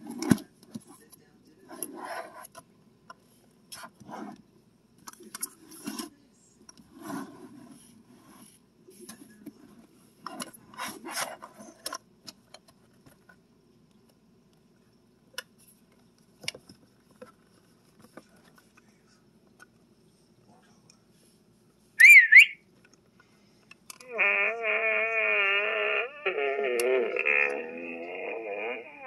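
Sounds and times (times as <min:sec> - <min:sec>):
handling rustling and scraping: 0:06.8 - 0:13.4.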